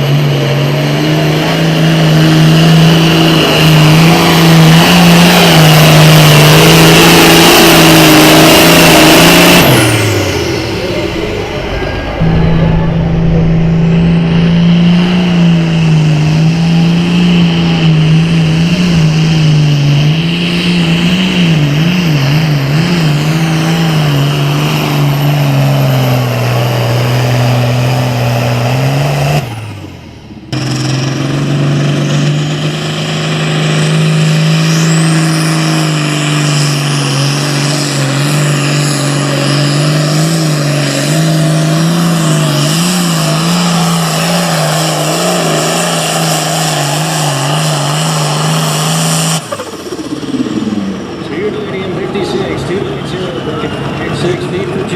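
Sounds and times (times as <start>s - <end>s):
diesel engine running at high revs: 0.0s - 54.9s.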